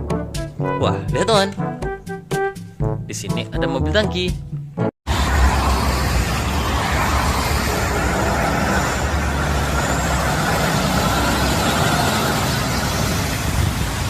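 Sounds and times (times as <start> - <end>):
noisy wash: 5.1 - 14.0
truck engine rumbling: 5.1 - 14.0.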